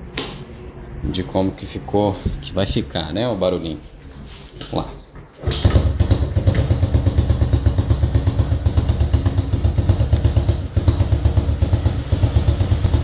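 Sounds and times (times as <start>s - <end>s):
motorcycle engine running: 5.6s - 13.0s.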